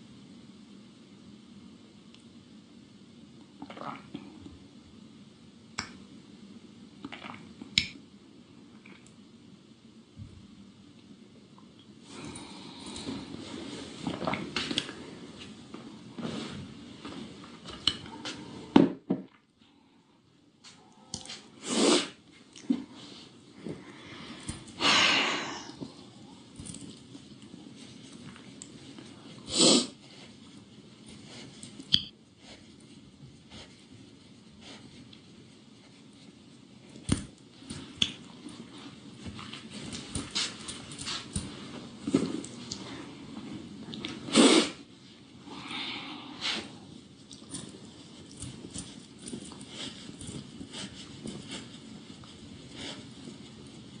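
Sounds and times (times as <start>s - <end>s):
woman sniffling: 24.8s - 25.8s
rustling and clattering: 32.6s - 42.7s, 47.2s - 53.9s.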